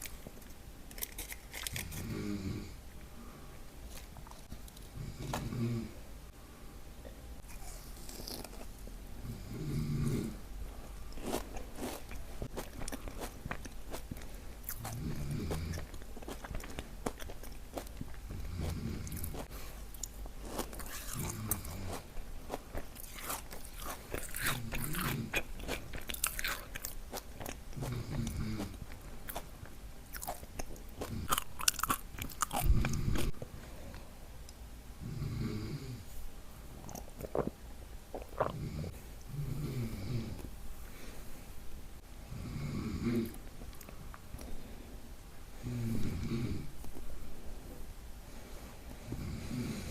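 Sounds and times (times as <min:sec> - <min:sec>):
crunching and chewing cookie: 0:00.0 - 0:02.7, 0:03.8 - 0:05.6, 0:07.4 - 0:09.4, 0:10.0 - 0:34.1, 0:36.8 - 0:38.6
man snoring: 0:02.0 - 0:02.8, 0:05.0 - 0:06.0, 0:09.2 - 0:10.4, 0:14.9 - 0:15.8, 0:18.4 - 0:19.2, 0:27.9 - 0:28.7, 0:32.6 - 0:33.3, 0:35.0 - 0:36.0, 0:38.5 - 0:40.4, 0:42.3 - 0:43.3, 0:45.6 - 0:46.7, 0:49.1 - 0:49.9.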